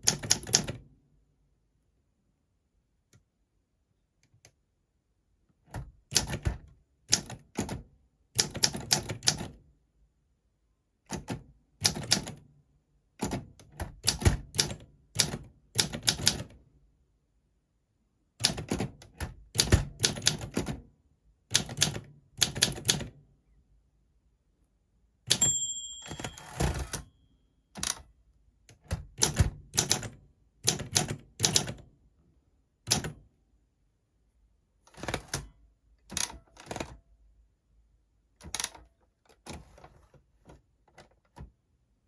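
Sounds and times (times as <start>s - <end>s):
manual typewriter typing: 0.0s - 0.8s, 8.4s - 9.5s, 11.1s - 12.4s, 13.2s - 16.5s, 18.4s - 20.8s, 26.1s - 27.1s.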